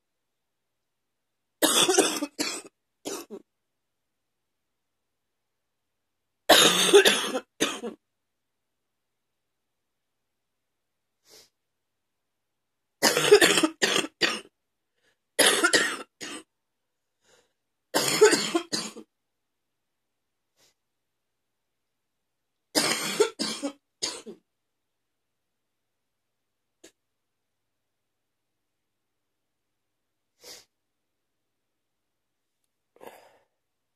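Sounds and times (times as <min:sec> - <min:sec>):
woman wet coughing: 0:01.6 - 0:03.4, 0:06.5 - 0:08.0, 0:18.0 - 0:19.0, 0:22.8 - 0:24.3.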